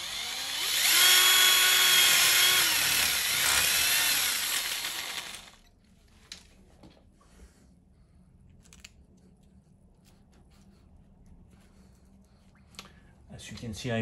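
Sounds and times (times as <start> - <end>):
power drill whine: 0.0 - 5.7.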